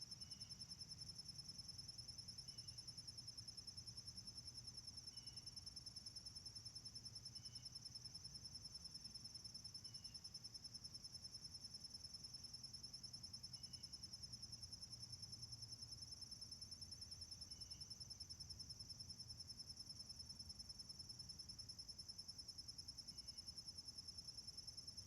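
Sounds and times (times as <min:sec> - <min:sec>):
faint bird chirps: 0:00.2 - 0:00.6, 0:02.4 - 0:03.0, 0:05.0 - 0:05.6, 0:07.2 - 0:07.9, 0:09.8 - 0:10.4, 0:13.5 - 0:14.0.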